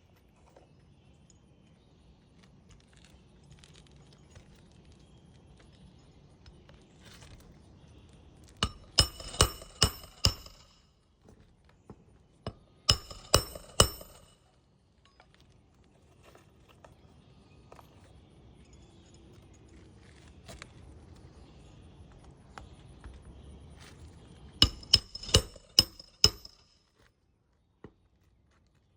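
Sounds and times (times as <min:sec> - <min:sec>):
hammer driving nails into shingle: 0:08.6 - 0:10.8, 0:12.5 - 0:14.4, 0:24.6 - 0:26.7.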